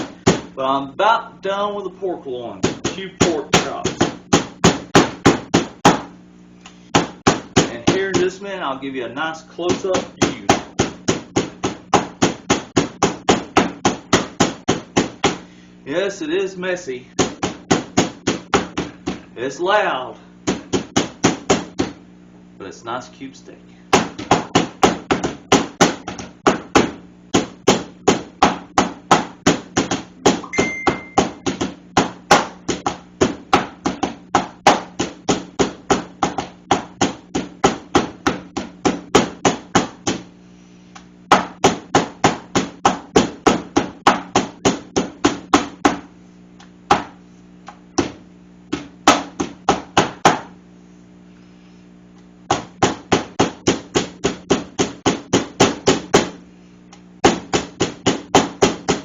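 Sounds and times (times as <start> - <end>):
mallet pounding meat: 2.6 - 6.1, 6.9 - 8.4, 9.7 - 15.4, 17.2 - 19.2, 20.4 - 22.0, 23.9 - 40.3, 41.3 - 46.1, 46.9 - 47.2, 48.0 - 50.6, 52.5 - 56.4, 57.2 - 59.0.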